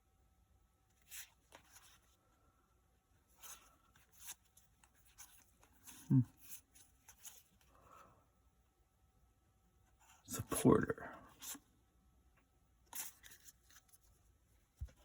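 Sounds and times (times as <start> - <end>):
cards rustling and clicking: 1.0 - 2.1, 3.3 - 7.8, 12.9 - 14.1
low voice sound: 5.9 - 6.4, 10.1 - 11.5.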